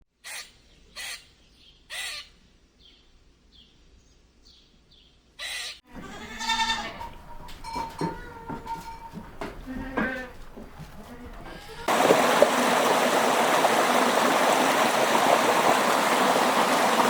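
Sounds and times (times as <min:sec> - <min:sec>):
harsh animal call bursts: 0:05.4 - 0:06.6.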